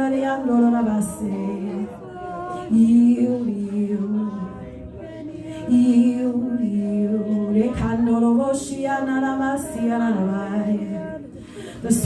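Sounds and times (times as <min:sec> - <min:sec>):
woman singing long notes: 0:00.0 - 0:12.0.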